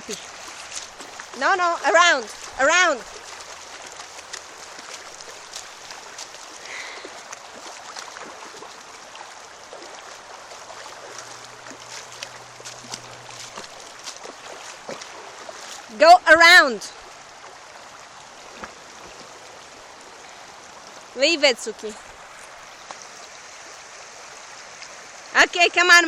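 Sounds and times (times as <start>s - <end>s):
small clicks and splashes: 0.0s - 16.0s, 17.0s - 19.8s, 21.7s - 23.3s
river water flowing: 0.0s - 26.0s.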